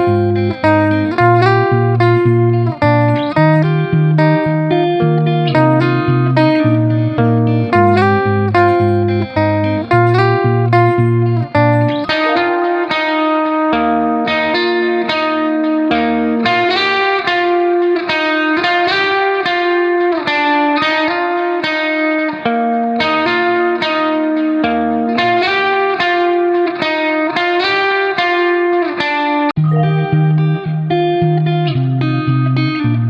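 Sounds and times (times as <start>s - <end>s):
low bass line: 0.0s - 12.3s, 29.6s - 33.0s
plucked guitar notes: 0.0s - 33.0s.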